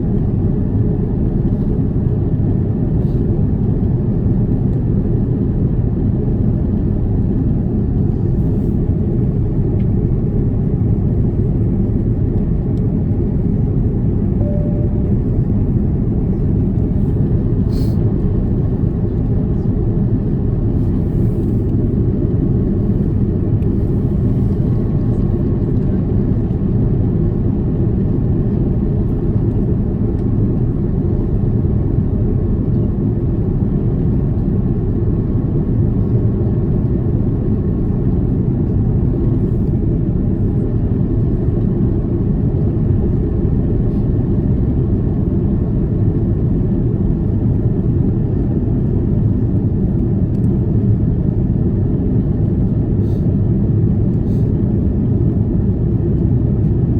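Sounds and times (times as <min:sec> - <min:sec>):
aircraft cabin engine rumble: 0:00.0 - 0:56.9.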